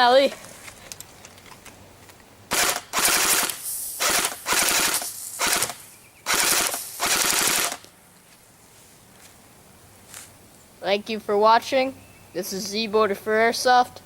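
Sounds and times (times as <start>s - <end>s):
airsoft gun full-auto bursts: 2.5s - 7.8s.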